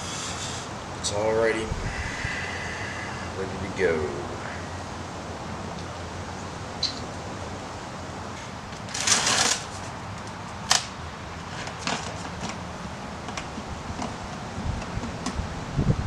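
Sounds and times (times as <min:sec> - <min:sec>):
rustling scrape: 0:08.8 - 0:10.0.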